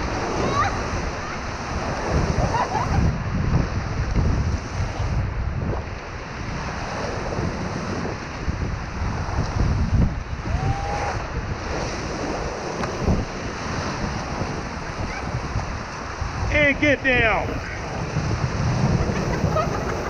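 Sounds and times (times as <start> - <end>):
wind buffeting microphone: 0.0 - 20.0
whitewater rushing: 9.9 - 20.0.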